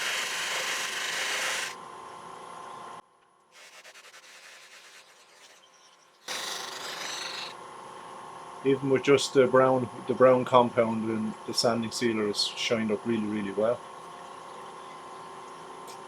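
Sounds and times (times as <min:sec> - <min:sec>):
wood rubbing on buffing wheel: 0:00.0 - 0:01.8, 0:06.3 - 0:07.6.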